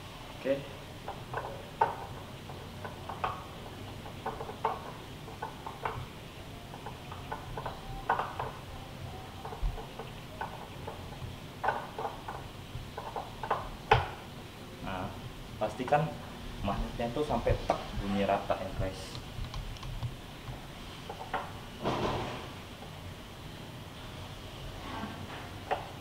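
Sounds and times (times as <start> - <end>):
magnetic joints clicking: 6.7 - 14.1.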